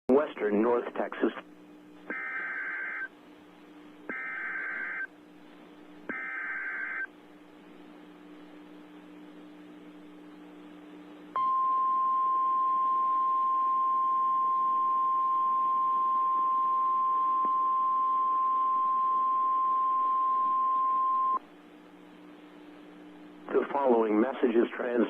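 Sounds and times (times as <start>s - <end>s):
radio hiss: 0.1s - 3.1s, 4.2s - 5.1s, 23.4s - 25.0s
steady alarm tone: 2.1s - 3.1s, 4.1s - 5.1s, 6.1s - 7.1s, 11.4s - 21.4s.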